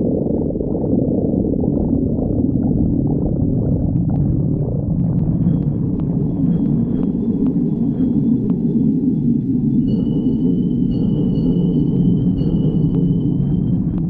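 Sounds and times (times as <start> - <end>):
stomach growling: 0.0 - 11.1.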